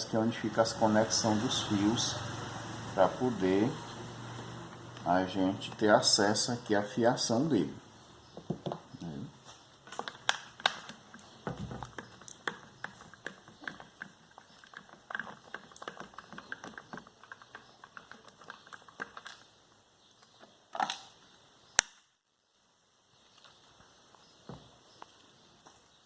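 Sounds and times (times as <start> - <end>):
hands clicking plastic fan cover: 9.9 - 19.4
sharp plastic click: 21.8 - 22.1.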